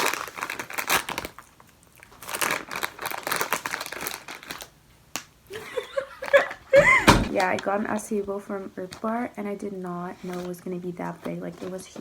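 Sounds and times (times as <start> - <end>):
food packaging crinkling: 0.0 - 7.8.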